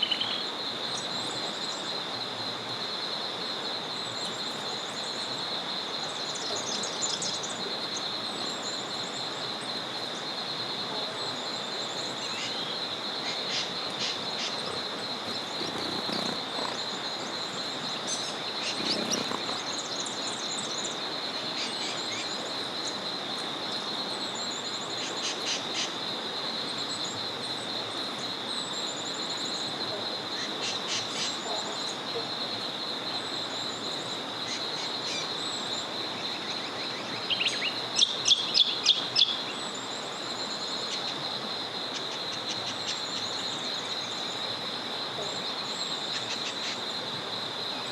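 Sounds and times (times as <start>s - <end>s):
songbirds chirping: 3.6s - 26.0s.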